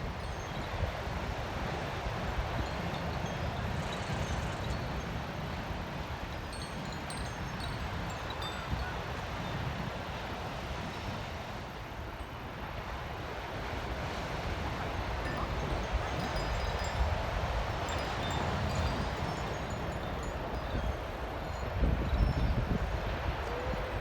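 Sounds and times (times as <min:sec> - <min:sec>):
wind chime tinkling: 0:00.0 - 0:05.4, 0:06.2 - 0:09.4, 0:15.2 - 0:24.0
sea waves: 0:04.7 - 0:22.0, 0:22.6 - 0:24.0
wind on microphone: 0:12.9 - 0:24.0.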